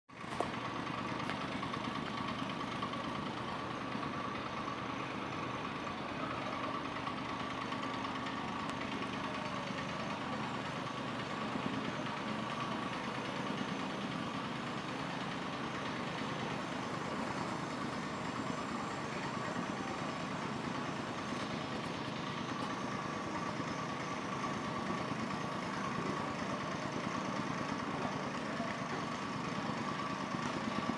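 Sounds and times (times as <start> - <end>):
tamping rammer engine pulsing: 0.1 - 30.9.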